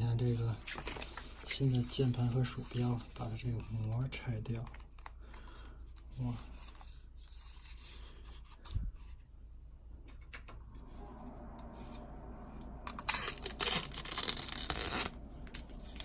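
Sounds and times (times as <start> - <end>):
plastic film peeling: 0.6 - 5.2, 12.9 - 16.0
loud tearing rip: 12.9 - 16.0.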